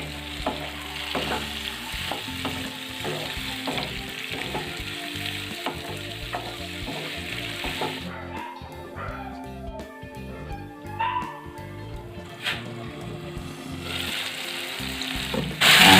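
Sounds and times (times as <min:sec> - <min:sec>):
food sizzling in a pan: 0:00.0 - 0:08.0, 0:13.4 - 0:15.9.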